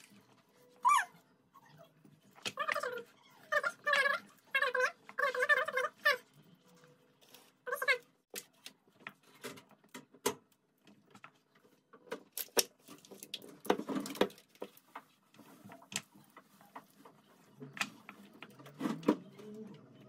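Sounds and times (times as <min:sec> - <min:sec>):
small objects clicking and knocking: 0:08.3 - 0:19.2.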